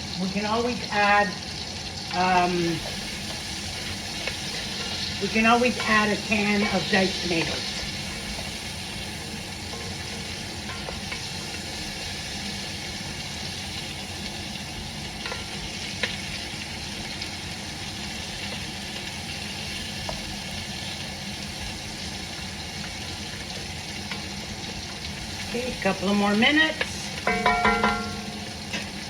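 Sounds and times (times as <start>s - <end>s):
onion sizzling in oil: 0.0s - 29.0s
utensil ticking against pot: 2.8s - 13.6s, 26.8s - 28.4s.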